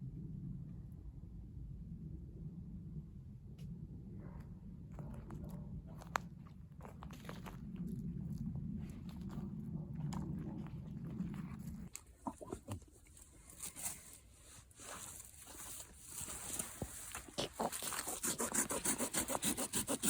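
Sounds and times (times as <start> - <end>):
low rumble: 0.0 - 12.4
hand saw cutting wood: 17.9 - 20.0.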